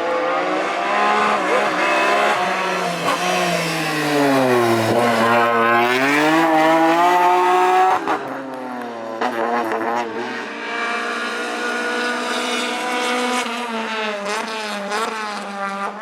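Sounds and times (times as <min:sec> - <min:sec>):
rally car engine revving: 0:00.0 - 0:16.0.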